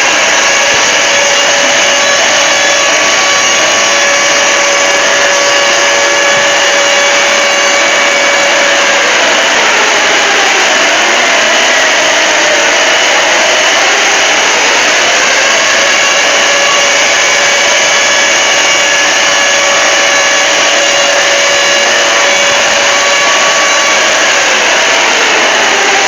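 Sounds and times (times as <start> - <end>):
pitch glides: 0.0 - 17.4
distorted alarm noise: 0.0 - 26.0.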